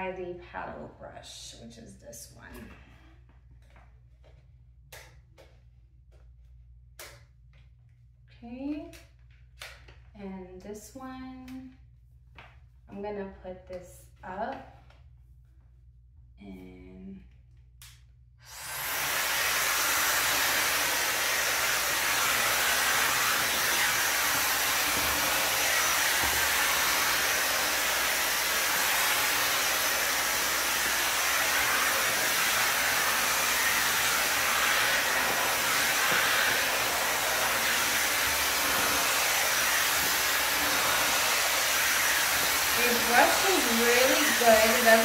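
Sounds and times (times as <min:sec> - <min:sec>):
hot-air dryer brush blowing: 0:18.4 - 0:45.0.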